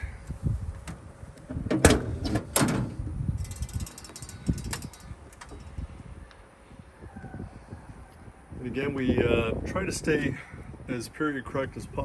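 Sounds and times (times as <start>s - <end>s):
car hood metal clunks: 0.8s - 3.0s
light rattling clicks: 0.8s - 6.4s.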